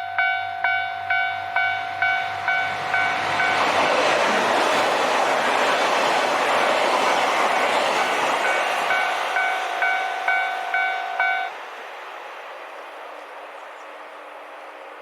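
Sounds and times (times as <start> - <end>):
level crossing warning bell: 0.0 - 3.7, 8.4 - 11.6
diesel train passing: 0.0 - 15.0.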